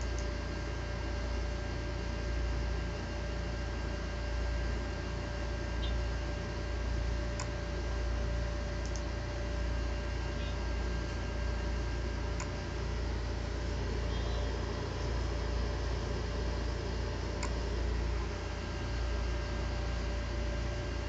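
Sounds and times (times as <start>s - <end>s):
steady hum: 0.0s - 21.0s
laptop faint clicks: 8.8s - 9.1s.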